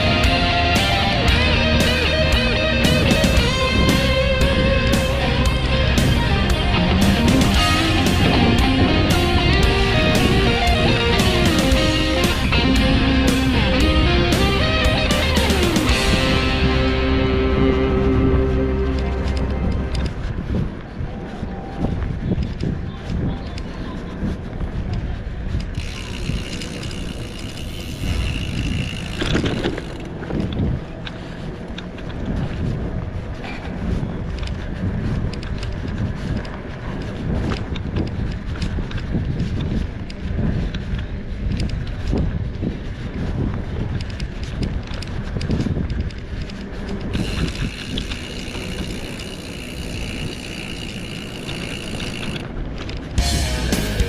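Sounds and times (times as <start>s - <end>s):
steady high whine: 0.0s - 23.0s, 25.2s - 54.0s
bike rattles and clicks: 0.0s - 54.0s
tyre and road rumble: 0.0s - 54.0s
wind buffeting microphone: 0.0s - 54.0s
steady high hiss: 53.2s - 54.0s.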